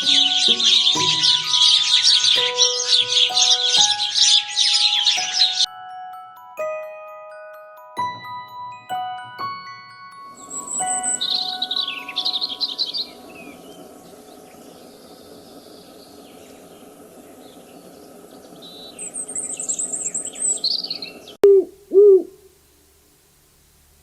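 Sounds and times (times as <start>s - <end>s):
small birds chirping: 0.0s - 5.7s, 10.2s - 21.4s
background hiss: 0.0s - 24.0s
owl hooting: 21.4s - 22.6s.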